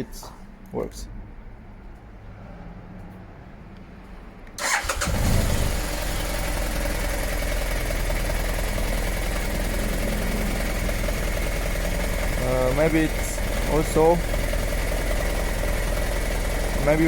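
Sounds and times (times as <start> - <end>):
motorcycle engine idling: 4.6 - 17.0
motorcycle engine starting: 4.6 - 17.0.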